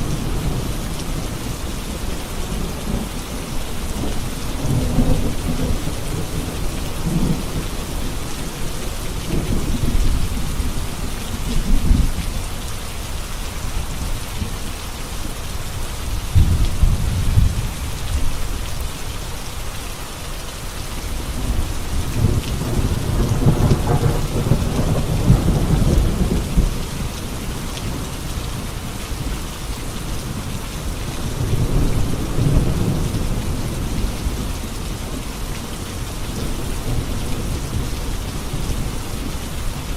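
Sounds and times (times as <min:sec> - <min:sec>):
heavy rain on a road: 0:00.0 - 0:39.9
thunder rumbling: 0:16.1 - 0:18.6, 0:21.4 - 0:29.3.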